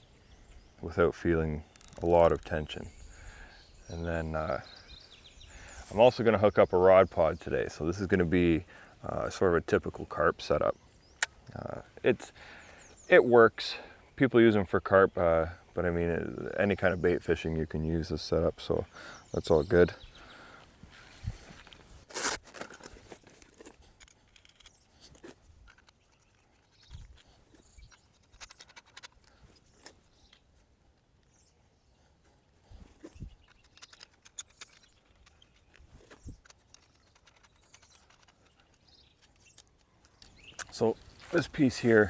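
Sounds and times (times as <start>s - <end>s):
fishing gear clicks and scrapes: 1.6s - 2.8s, 21.6s - 30.4s, 32.9s - 42.0s.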